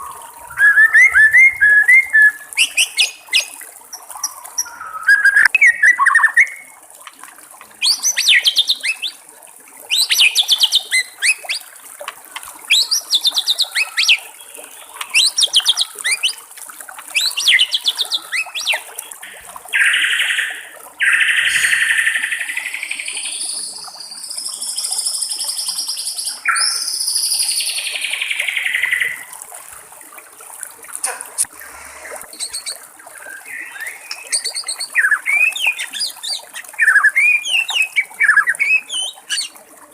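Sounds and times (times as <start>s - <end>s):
bird singing whistled phrases: 0.0s - 3.5s, 4.2s - 6.6s, 7.8s - 9.2s, 9.9s - 11.6s, 15.1s - 16.4s, 17.2s - 18.9s, 26.3s - 27.6s, 32.3s - 39.6s
trickling water hiss: 0.0s - 39.9s.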